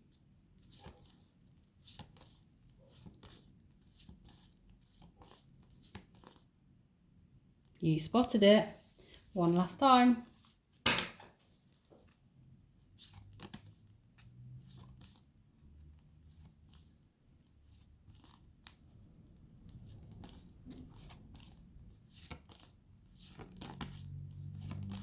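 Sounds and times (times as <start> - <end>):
flashcards flipped by hand: 1.8 - 6.4, 13.0 - 13.8, 14.6 - 15.2, 18.0 - 18.8, 19.6 - 25.0.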